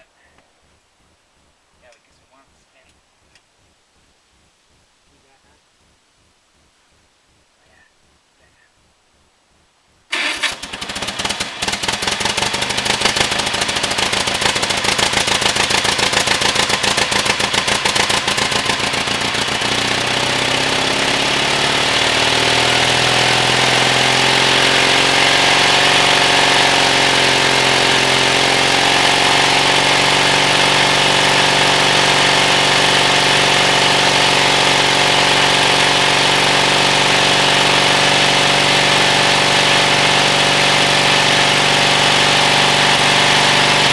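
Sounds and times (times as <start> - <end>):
crawler engine starting and running: 10.1 - 43.9.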